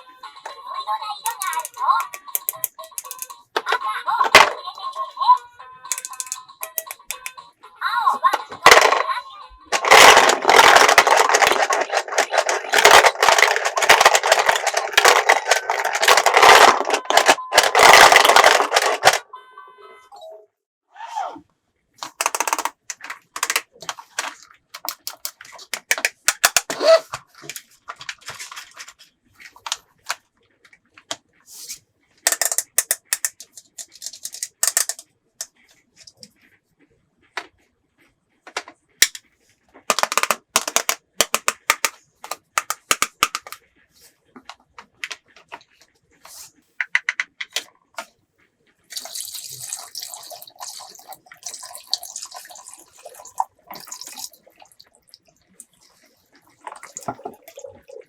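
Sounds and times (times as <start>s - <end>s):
plastic toy pieces clicking: 1.2s - 4.7s, 5.9s - 7.4s, 8.3s - 19.2s, 22.0s - 26.8s, 32.2s - 36.3s, 39.0s - 39.2s, 39.9s - 43.7s, 48.9s - 54.8s.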